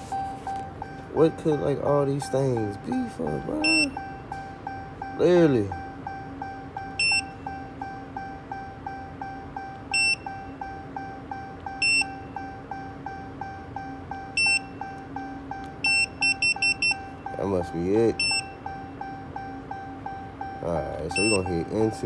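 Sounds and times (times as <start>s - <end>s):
short high beeps: 0.0s - 9.0s, 13.1s - 22.0s
low steady hum: 0.0s - 22.0s
soft repeating chime: 0.1s - 6.0s, 16.0s - 22.0s.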